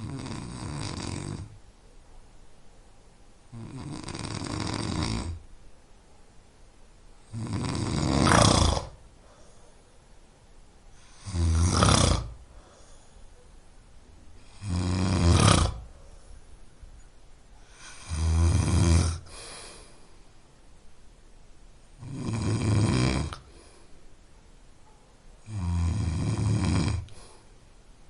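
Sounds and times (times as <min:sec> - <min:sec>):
man snoring: 0:00.0 - 0:01.6, 0:03.5 - 0:05.4, 0:07.3 - 0:09.0, 0:11.0 - 0:12.5, 0:14.4 - 0:15.9, 0:17.7 - 0:19.6, 0:22.0 - 0:23.5, 0:25.4 - 0:27.2.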